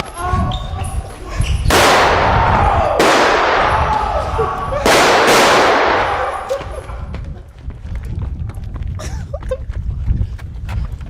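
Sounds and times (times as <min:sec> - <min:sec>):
gunshots: 0:01.7 - 0:07.0.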